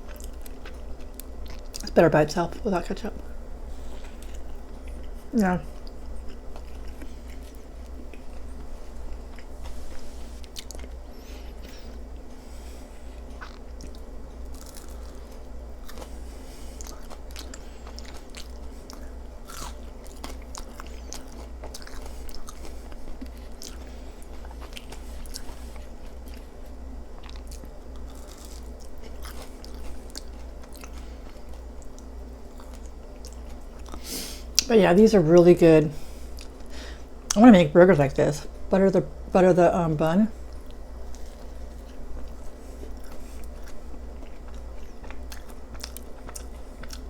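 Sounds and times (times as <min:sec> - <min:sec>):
chewing and biting food: 0:00.0 - 0:02.0, 0:03.7 - 0:34.7, 0:36.2 - 0:37.4, 0:40.4 - 0:47.0
steady low hum: 0:00.0 - 0:47.0.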